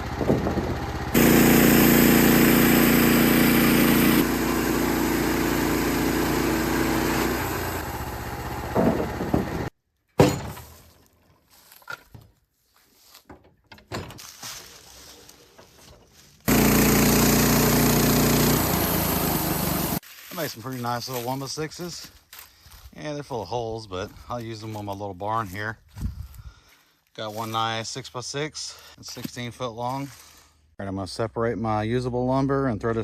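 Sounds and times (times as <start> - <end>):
sawmill engine running: 0.0 - 9.7, 16.4 - 20.0
scattered knocks and clatter: 0.1 - 0.9, 8.7 - 9.6.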